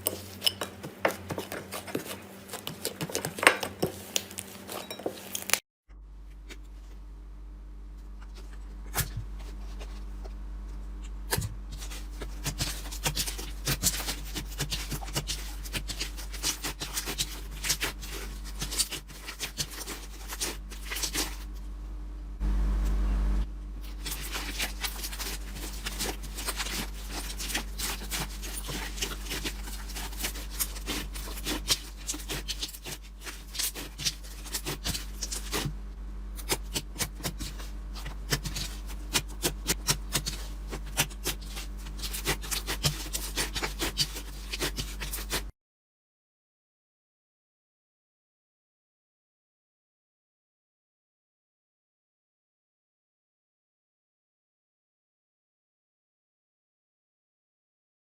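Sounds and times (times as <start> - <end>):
steady low hum: 0.0 - 45.5
slime crackling and popping: 23.8 - 35.7, 36.4 - 45.5.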